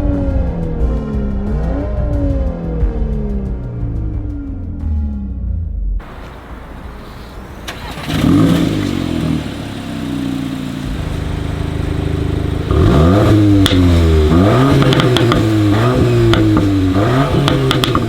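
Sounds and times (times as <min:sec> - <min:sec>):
car engine starting and revving: 0:00.0 - 0:18.0
exhaust crackles: 0:00.0 - 0:18.0.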